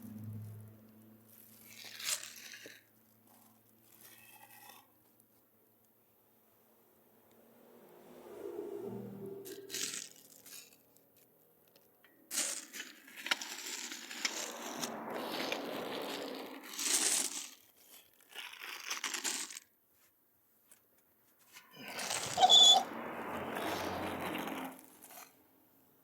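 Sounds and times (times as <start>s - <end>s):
crinkling and rustling: 0.1s - 6.0s, 9.5s - 22.8s.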